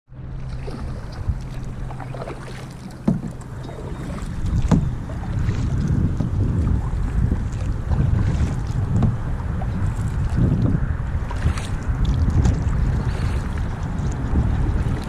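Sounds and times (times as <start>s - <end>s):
steady low hum: 0.1s - 12.0s
wind buffeting microphone: 0.1s - 15.0s
sharp knocks: 3.0s - 3.4s.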